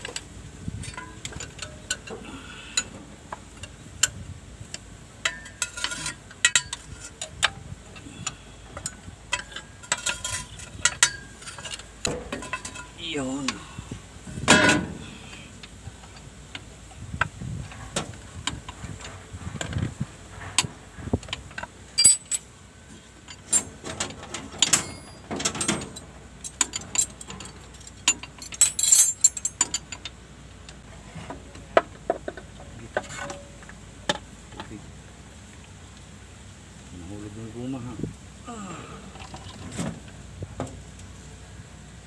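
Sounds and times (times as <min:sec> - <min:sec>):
metal tools clinking: 0:00.8 - 0:03.8, 0:05.2 - 0:13.6, 0:21.6 - 0:22.5, 0:23.2 - 0:30.2.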